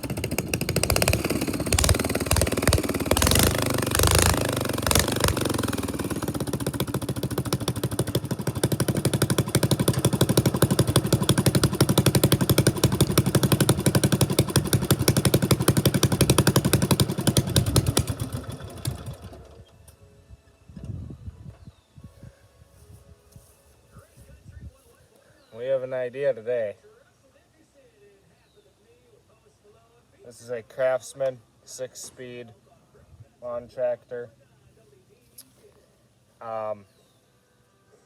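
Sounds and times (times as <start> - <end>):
lawn tractor engine running: 0.0 - 19.8.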